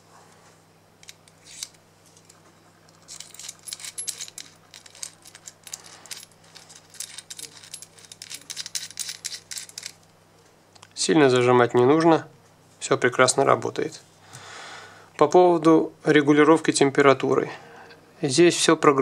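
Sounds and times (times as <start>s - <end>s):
faint low hum: 0.0s - 19.0s
light metallic clicks and clinks: 1.0s - 10.0s.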